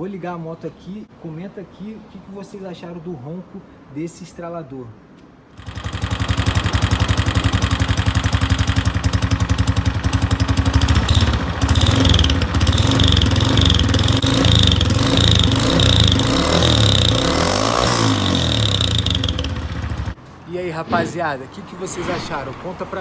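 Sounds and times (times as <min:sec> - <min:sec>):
motorcycle engine idling: 0:05.6 - 0:20.2.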